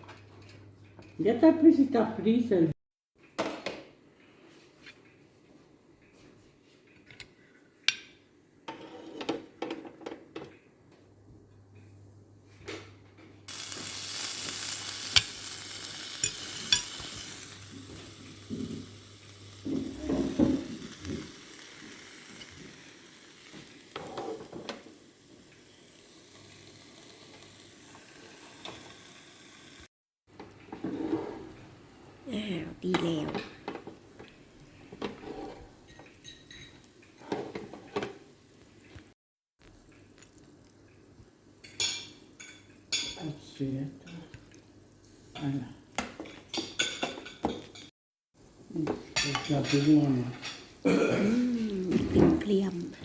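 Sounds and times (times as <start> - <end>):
food sizzling on a hot plate: 13.5 - 29.9, 35.6 - 39.0, 41.5 - 44.2, 45.0 - 47.8, 48.6 - 50.8.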